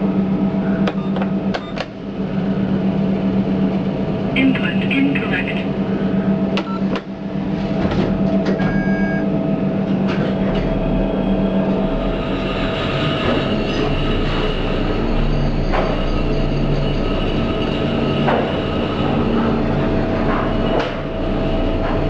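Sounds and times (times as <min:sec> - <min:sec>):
lift mechanical hum: 0:00.0 - 0:22.0
short electronic beep: 0:08.6 - 0:09.2.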